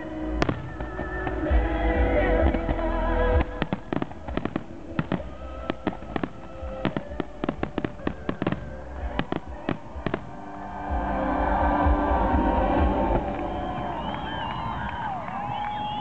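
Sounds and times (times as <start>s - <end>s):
fireworks crackling pops: 0.0s - 10.4s
music playing: 0.0s - 15.5s
fireworks low rumble: 0.0s - 16.0s.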